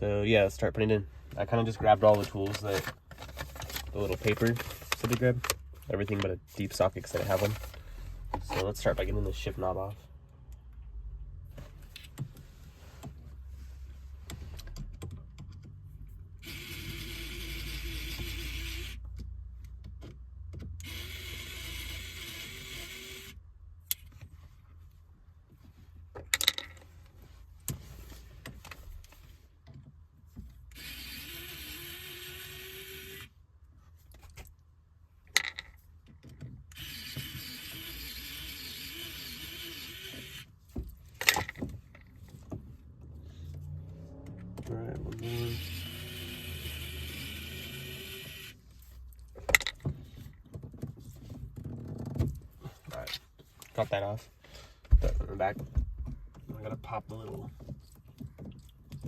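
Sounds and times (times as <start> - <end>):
clicks and knocks on gear shifter: 49.4 - 53.2.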